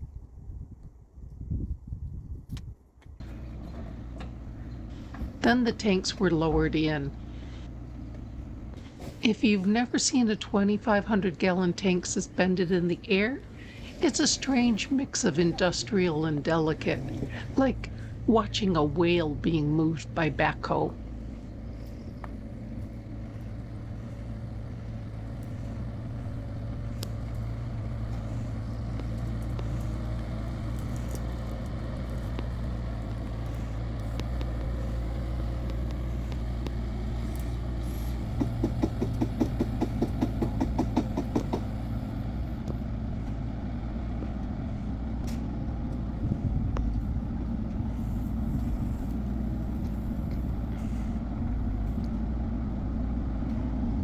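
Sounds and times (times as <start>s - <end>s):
backhoe diesel engine running: 3.1s - 54.0s
rattling knocks: 38.2s - 42.0s.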